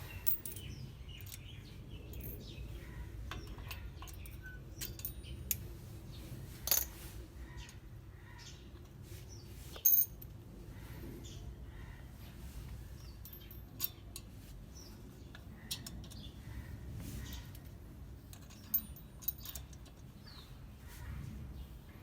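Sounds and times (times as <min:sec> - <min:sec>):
metal brake parts clinking: 0:00.1 - 0:02.6, 0:03.3 - 0:05.6, 0:09.7 - 0:10.3, 0:13.1 - 0:14.3, 0:17.2 - 0:20.4.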